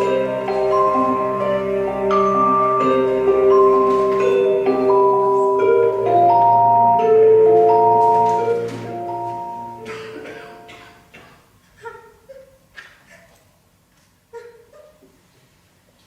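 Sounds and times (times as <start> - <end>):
slow ringing sustained notes: 0.0 - 10.9.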